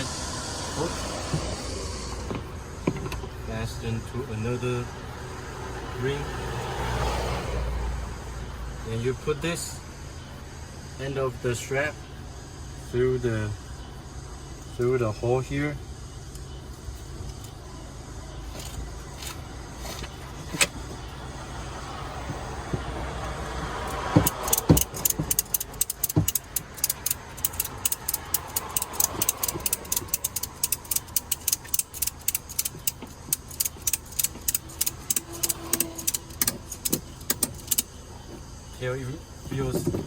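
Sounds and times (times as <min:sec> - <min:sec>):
ratchet buckle clicking: 0:23.8 - 0:37.9
strap being pulled through: 0:33.3 - 0:37.0.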